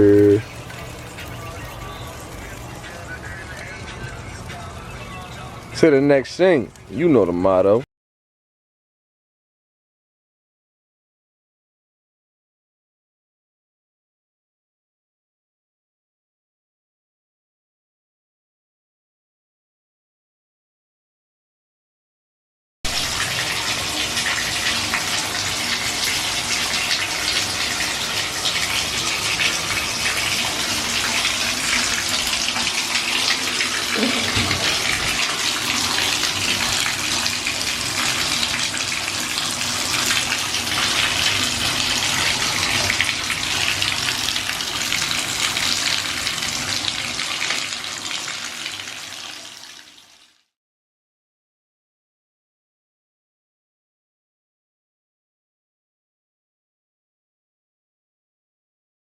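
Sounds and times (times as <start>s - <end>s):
running water: 0.0s - 7.8s, 22.9s - 50.4s.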